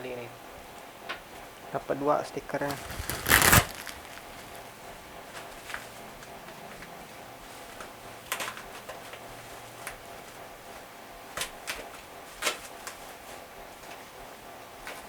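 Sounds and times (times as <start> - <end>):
packaging clicks and rustles: 2.6 - 4.6.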